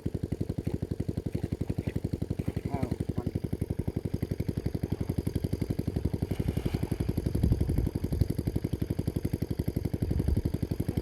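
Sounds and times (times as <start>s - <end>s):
small engine chugging: 0.0s - 11.0s.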